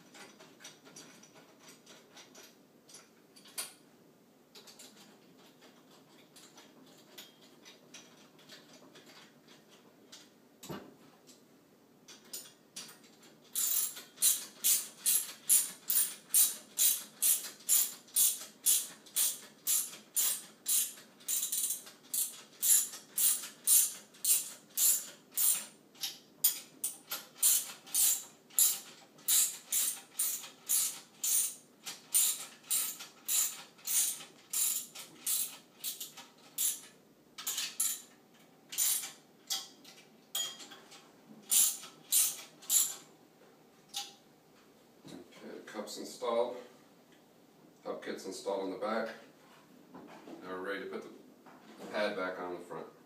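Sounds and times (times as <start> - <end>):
ratchet wrench clicking: 13.5 - 38.0, 38.8 - 39.2, 41.5 - 43.0.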